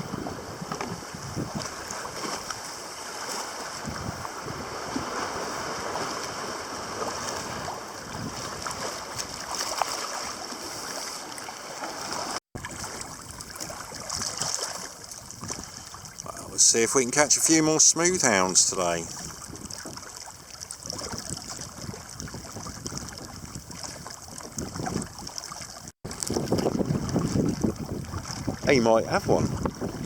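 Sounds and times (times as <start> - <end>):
wind on microphone: 0.0 - 2.8, 3.6 - 9.6, 12.6 - 16.6, 19.0 - 30.0
water lapping against kayak: 0.0 - 30.0.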